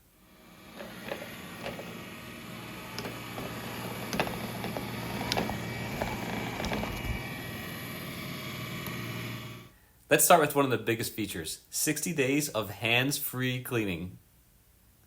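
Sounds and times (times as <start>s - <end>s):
robot vacuum motor hum: 0.1s - 9.7s.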